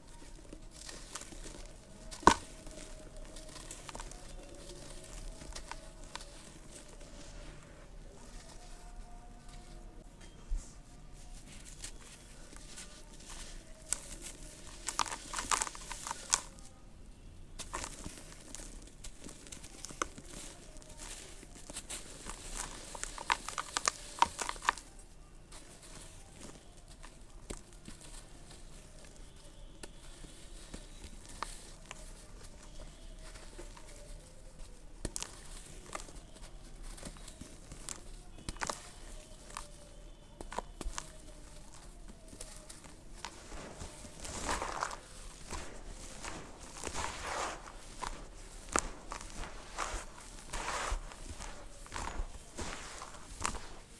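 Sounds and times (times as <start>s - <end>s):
dirt crumbling and crunching: 0.0s - 16.9s, 17.5s - 53.9s
faint crackles: 10.8s - 17.0s, 17.6s - 53.9s.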